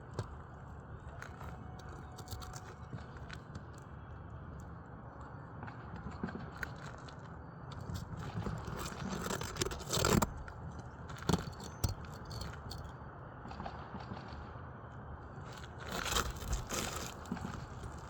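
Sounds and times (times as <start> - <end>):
shingles scraping and crackling: 7.8 - 12.9, 15.5 - 18.0.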